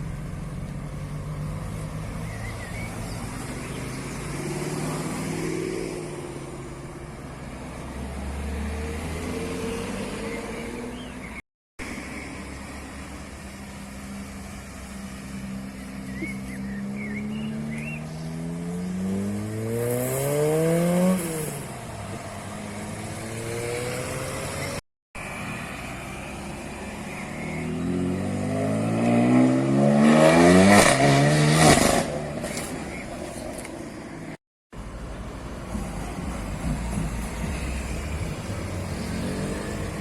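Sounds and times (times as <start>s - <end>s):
car engines revving: 0.0s - 11.4s, 12.0s - 40.0s
exhaust cracks: 35.6s - 40.0s.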